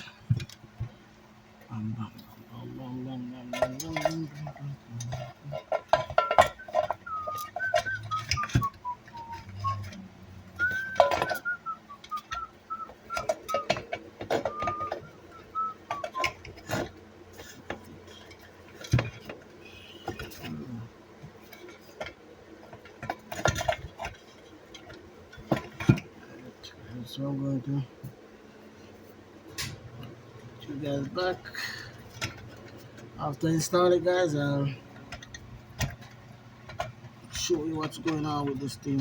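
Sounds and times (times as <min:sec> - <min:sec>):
metal tools clinking: 0:03.4 - 0:10.0, 0:10.6 - 0:11.6
person whistling a tune: 0:06.2 - 0:16.8.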